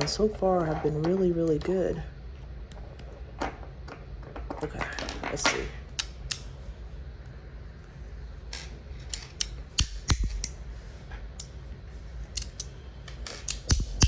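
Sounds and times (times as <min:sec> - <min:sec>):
metal fidget slider clicking: 0:12.2 - 0:12.7.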